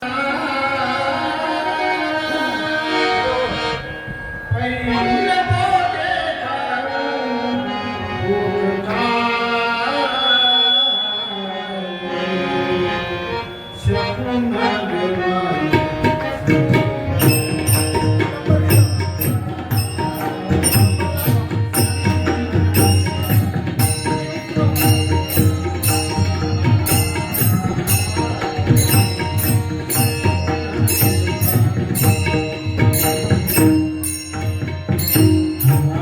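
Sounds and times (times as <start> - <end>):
sustained instrumental tones: 1.7 - 36.0
tabla drumming: 15.5 - 36.0.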